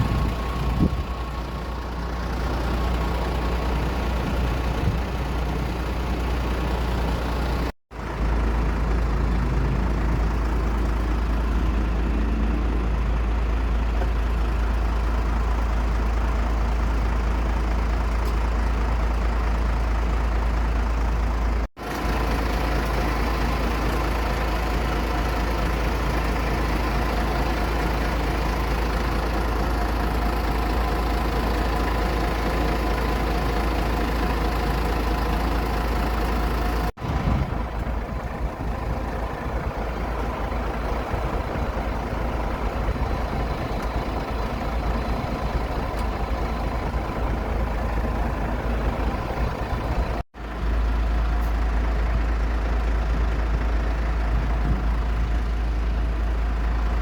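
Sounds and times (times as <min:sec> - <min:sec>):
engine rumble with whining tones: 0:00.0 - 0:57.0.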